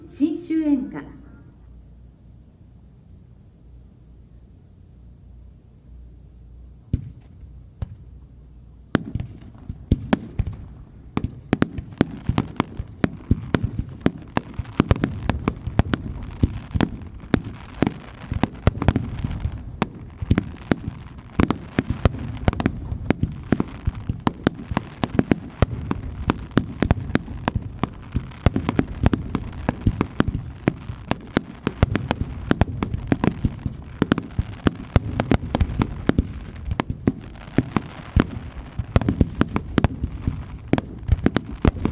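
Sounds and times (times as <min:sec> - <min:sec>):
fireworks launching and bursting: 0:08.9 - 0:41.9.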